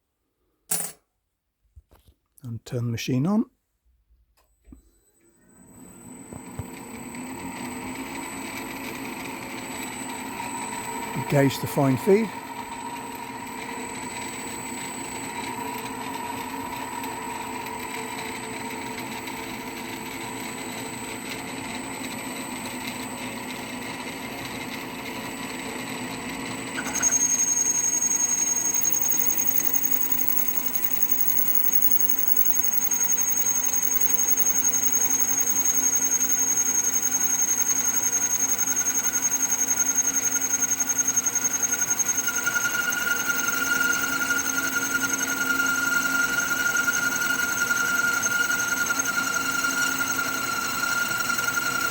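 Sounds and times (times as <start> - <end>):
high steady whine: 10.0 - 15.2, 26.7 - 44.6
boring machine cutting metal: 26.7 - 51.9.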